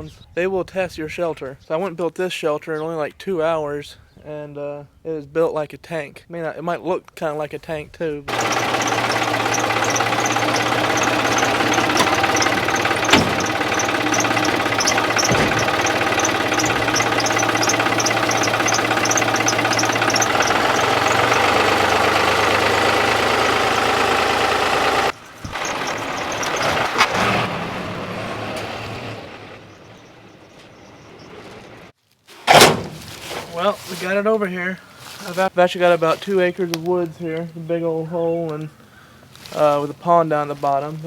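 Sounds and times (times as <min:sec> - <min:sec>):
rapid high ticking: 0:08.3 - 0:27.2
engine running: 0:08.3 - 0:31.9.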